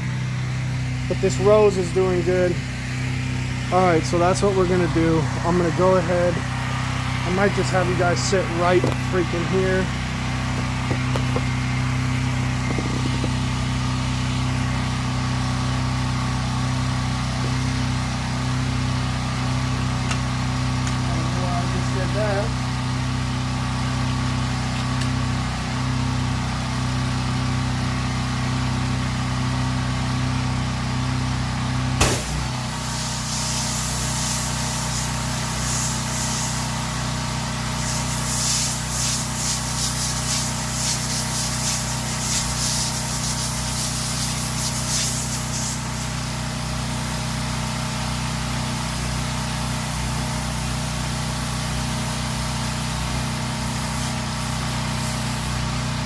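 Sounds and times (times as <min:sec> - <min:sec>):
pressure washer engine running: 0:00.0 - 0:56.0
sharp click: 0:32.0 - 0:32.6
hissing water spray: 0:32.0 - 0:56.0.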